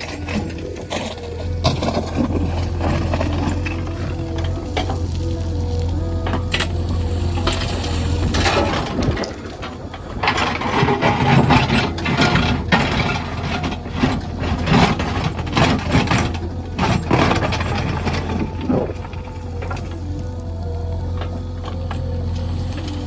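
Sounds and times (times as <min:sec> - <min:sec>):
backhoe diesel engine running: 0:00.0 - 0:23.0
metal clanking and scraping: 0:00.0 - 0:23.0.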